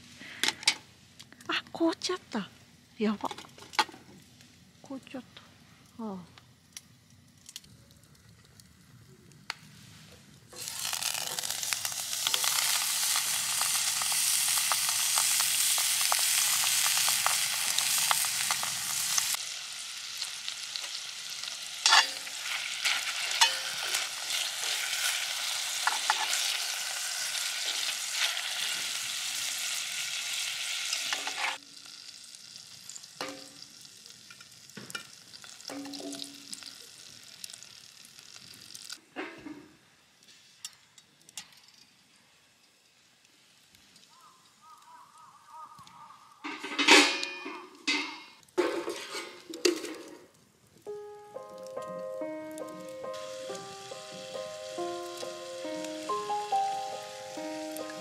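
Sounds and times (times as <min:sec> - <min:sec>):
food sizzling in a hot pan: 0:09.6 - 0:39.0, 0:50.9 - 0:58.0.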